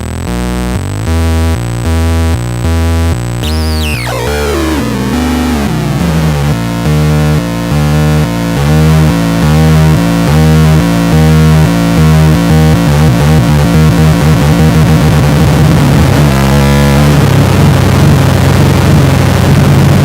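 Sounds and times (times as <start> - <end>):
distorted synth buzz: 3.4 - 8.2.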